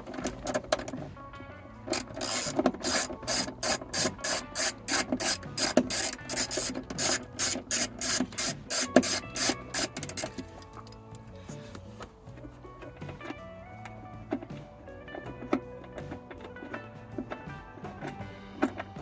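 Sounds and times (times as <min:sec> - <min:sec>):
socket ratchet clicking: 0:01.9 - 0:11.2.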